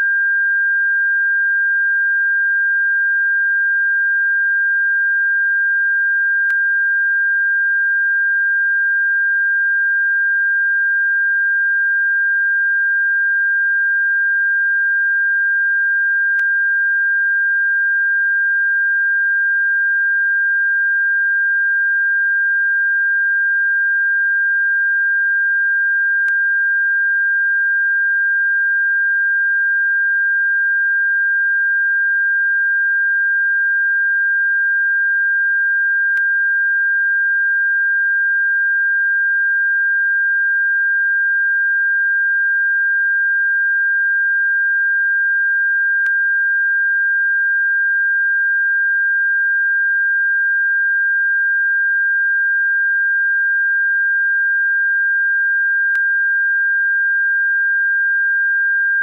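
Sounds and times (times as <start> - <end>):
faint click: 36.1 - 36.3, 55.9 - 56.1.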